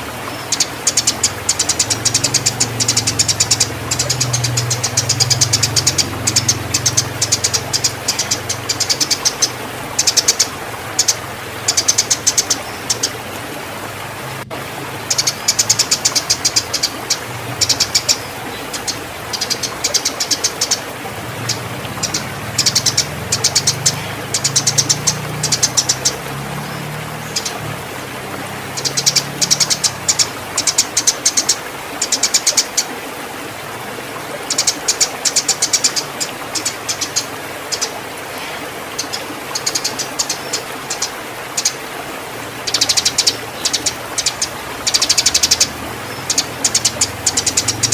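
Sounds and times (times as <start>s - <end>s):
sparrows chattering chirps: 0.3s - 13.2s, 15.1s - 20.8s, 21.4s - 27.6s, 28.8s - 32.6s, 42.7s - 47.9s.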